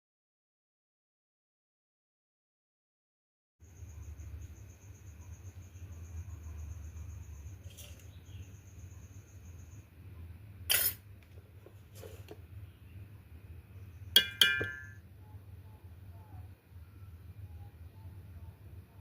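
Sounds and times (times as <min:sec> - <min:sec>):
kitchenware clinking: 0:14.2 - 0:15.0.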